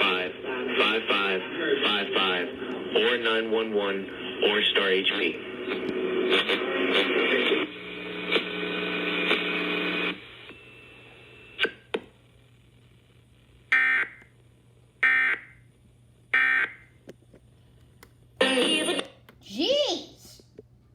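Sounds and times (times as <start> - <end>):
radio broadcast audio: 0.0 - 10.5.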